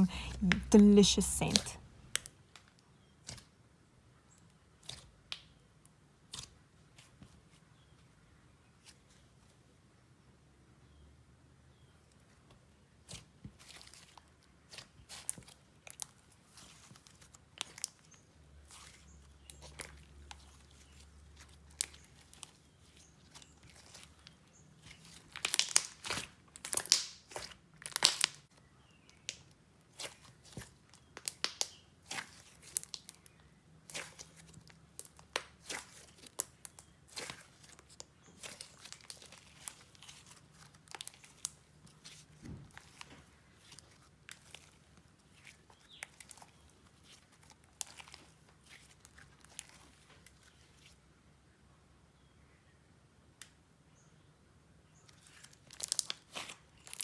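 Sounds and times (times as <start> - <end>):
slime squelching and popping: 18.8 - 28.5, 29.1 - 50.4, 55.3 - 57.0.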